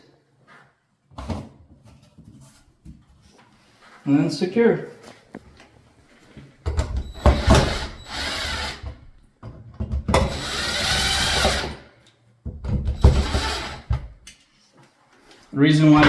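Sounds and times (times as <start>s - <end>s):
power drill tightening screws: 7.1s - 9.0s, 10.1s - 11.8s, 13.0s - 14.0s.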